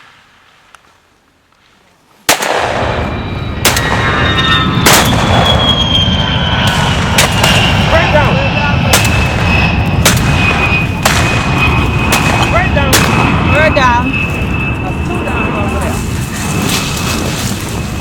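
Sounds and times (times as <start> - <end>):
shotgun blasts: 2.3 - 5.8, 6.6 - 7.8, 8.9 - 13.4
continuous heavy rumble: 2.4 - 18.0.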